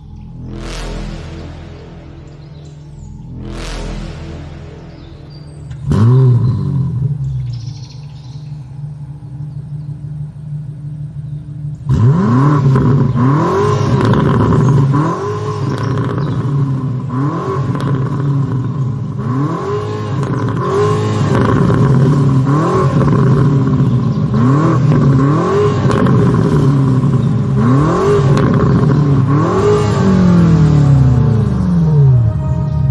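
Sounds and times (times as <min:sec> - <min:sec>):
car engine idling and revving: 0:00.0 - 0:32.9.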